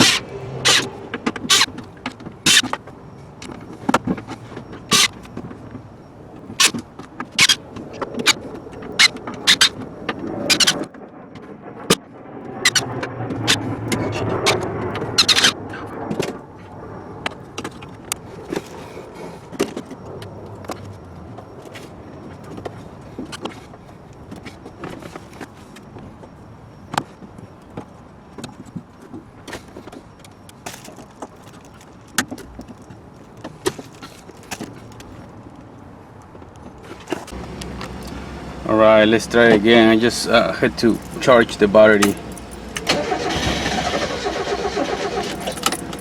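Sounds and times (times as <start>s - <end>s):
faint steady background noise: 0.0s - 46.0s
light metal clinks: 40.0s - 42.9s, 45.3s - 46.0s.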